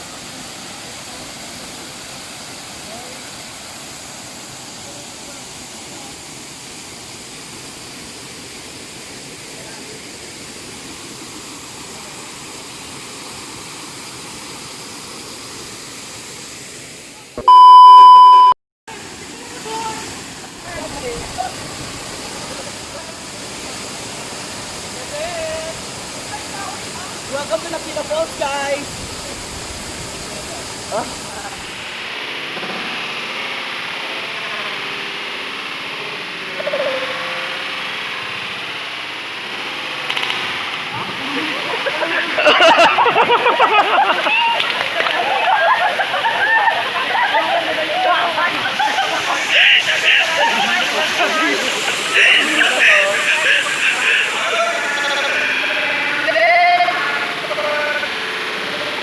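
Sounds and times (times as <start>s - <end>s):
flowing water rushing: 0.0s - 18.3s, 18.9s - 59.0s
electronic beep: 17.4s - 18.6s, 52.4s - 55.5s.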